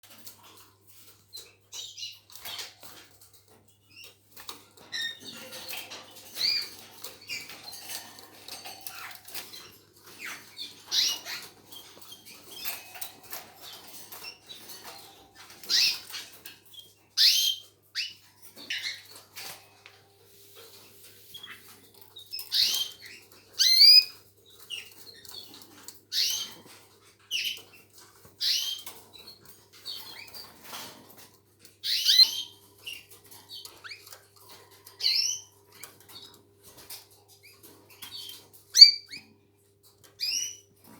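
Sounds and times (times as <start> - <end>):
small clicks and rustles: 0.0 - 40.9
canaries chirping: 0.1 - 40.9.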